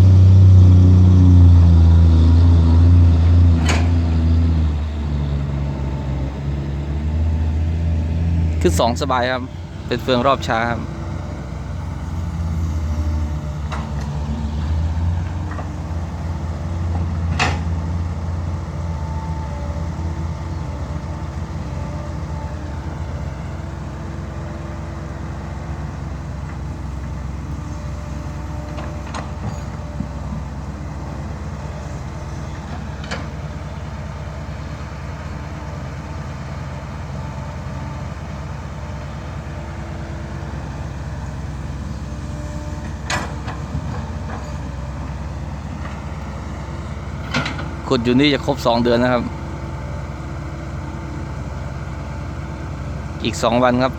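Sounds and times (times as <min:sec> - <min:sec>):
diesel truck engine under load: 0:00.0 - 0:53.9.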